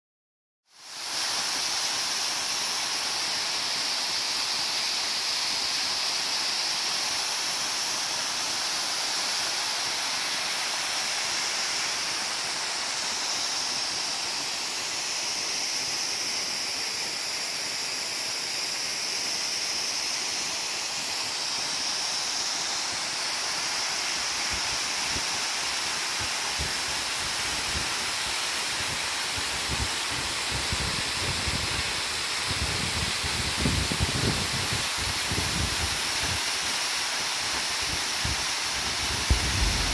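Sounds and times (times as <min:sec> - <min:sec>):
waterfall rushing: 0:00.8 - 0:39.9
soft low bumps: 0:39.3 - 0:39.9.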